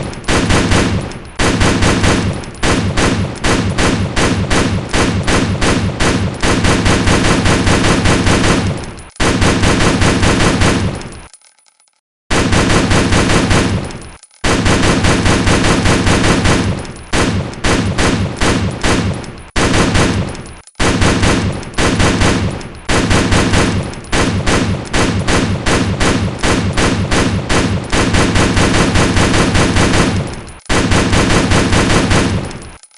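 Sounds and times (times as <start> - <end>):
rifle firing rapid shots: 0.0 - 11.3, 12.3 - 32.9.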